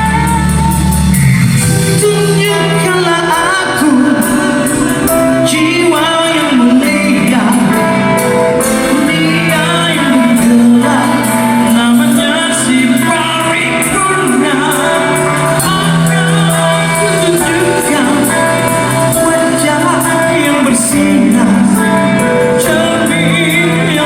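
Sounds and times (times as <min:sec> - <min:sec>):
live rock band playing: 0:00.0 - 0:24.0
person singing lead vocal: 0:00.0 - 0:24.0.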